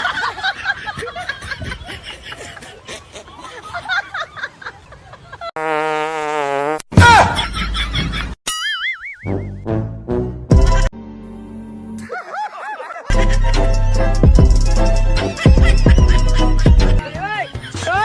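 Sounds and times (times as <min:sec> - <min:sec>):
fart sound effects: 0:05.6 - 0:06.9.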